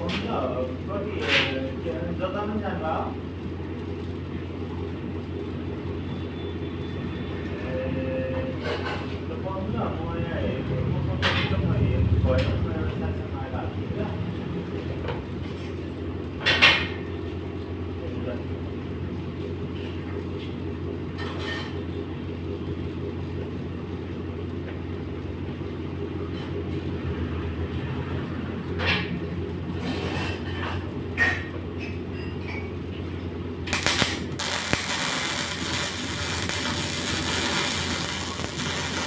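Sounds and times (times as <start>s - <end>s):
welding machine hum: 0.0s - 11.0s, 33.0s - 39.0s
welding arc hiss: 33.6s - 39.0s.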